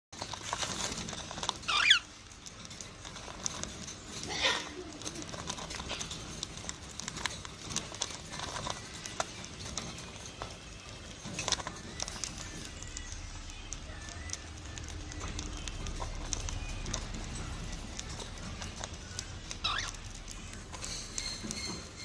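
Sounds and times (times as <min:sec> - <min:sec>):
small ticks and pattering: 0:00.2 - 0:22.0.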